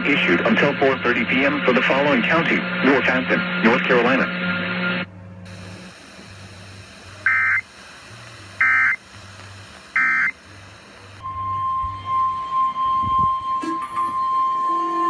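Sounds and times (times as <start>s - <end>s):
warbling data bursts: 5.5s - 11.2s
steady single-pitch alert tone: 7.2s - 7.7s, 8.6s - 9.0s, 9.9s - 10.4s.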